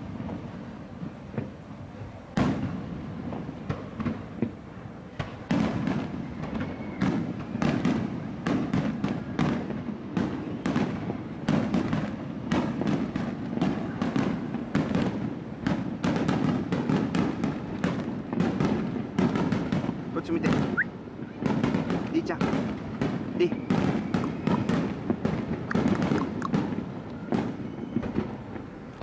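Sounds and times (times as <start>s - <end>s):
fireworks shells bursting: 10.3s - 29.0s.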